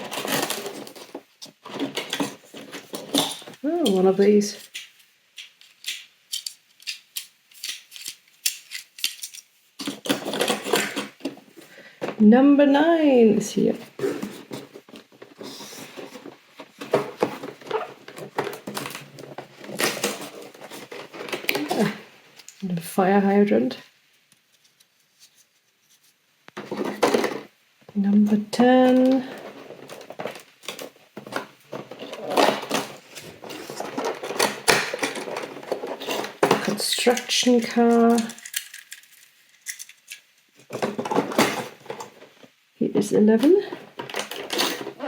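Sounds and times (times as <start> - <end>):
packaging crinkling and clicking: 0.0 - 3.6, 4.6 - 11.4, 14.2 - 22.6, 28.9 - 42.4, 43.9 - 45.0.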